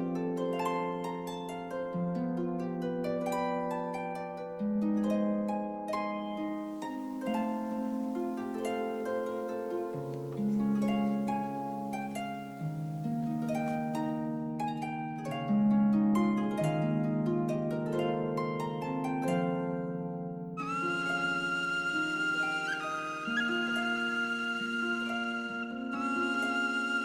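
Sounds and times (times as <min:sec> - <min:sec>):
harp-like plucked notes: 0:00.0 - 0:27.0
held chords: 0:06.2 - 0:14.9.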